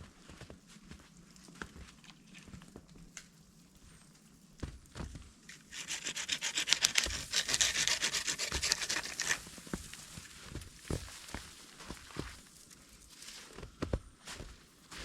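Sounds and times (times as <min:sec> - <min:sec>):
rapid rasping scraping: 0:05.6 - 0:09.7.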